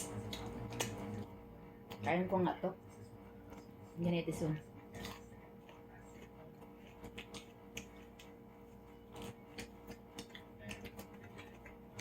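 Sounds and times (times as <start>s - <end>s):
chewing and mouth clicks: 0.0s - 1.3s, 4.9s - 12.0s.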